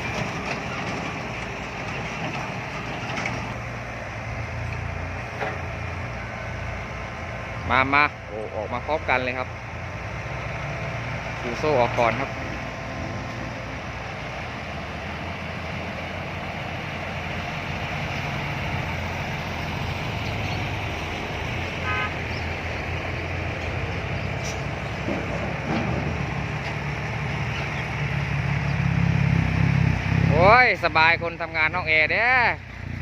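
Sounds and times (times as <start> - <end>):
diesel truck engines rumbling: 0.0 - 33.0.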